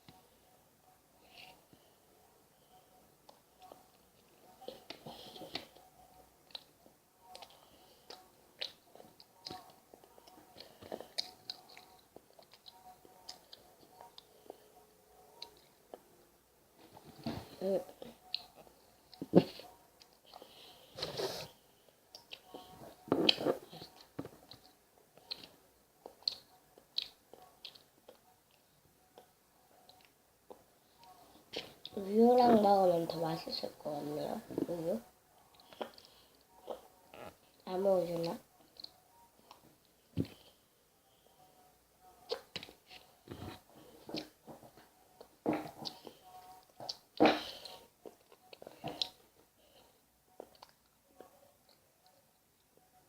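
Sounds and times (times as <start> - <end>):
person chewing with wet clicks: 6.4 - 14.6, 18.0 - 20.7, 22.1 - 28.6, 29.2 - 32.0, 35.4 - 39.6, 42.2 - 43.4, 45.2 - 49.5, 50.4 - 52.8.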